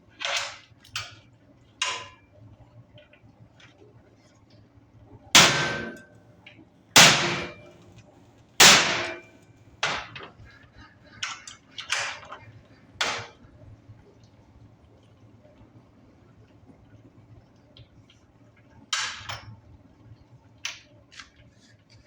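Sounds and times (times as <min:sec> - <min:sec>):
hammer striking metal: 0:05.4 - 0:06.1, 0:07.0 - 0:07.7, 0:08.6 - 0:09.3.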